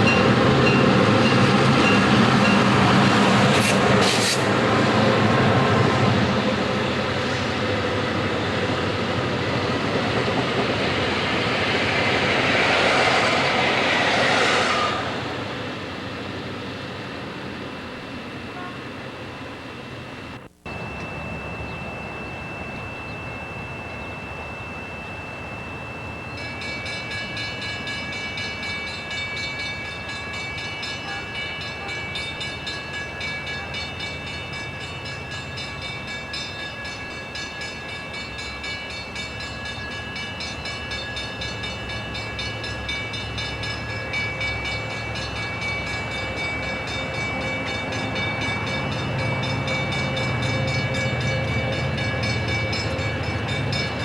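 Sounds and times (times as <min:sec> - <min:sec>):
train rumbling past: 0:00.0 - 0:54.0
pulsing high tones: 0:20.7 - 0:54.0
steady high tone: 0:20.7 - 0:54.0.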